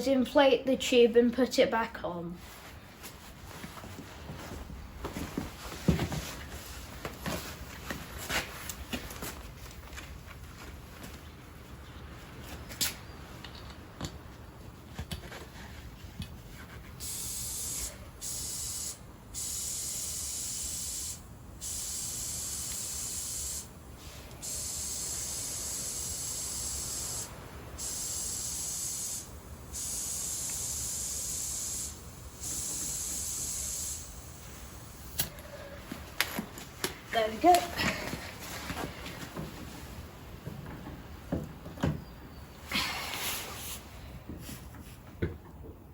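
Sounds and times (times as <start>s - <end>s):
compressed air hissing: 17.0s - 35.6s, 42.7s - 44.0s.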